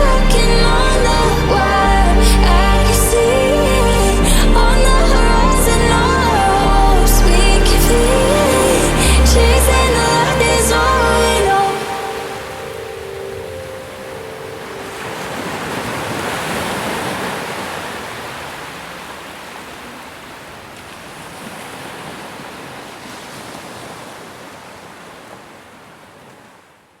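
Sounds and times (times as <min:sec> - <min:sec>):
ocean surf washing on beach: 0:08.0 - 0:26.6.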